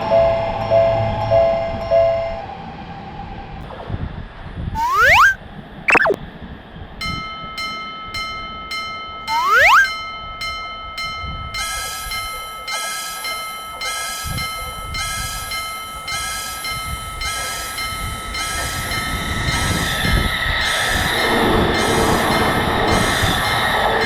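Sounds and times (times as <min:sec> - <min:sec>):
short rising whistle: 0:04.8 - 0:06.2, 0:09.3 - 0:09.9
railroad crossing bell ringing: 0:07.2 - 0:19.7.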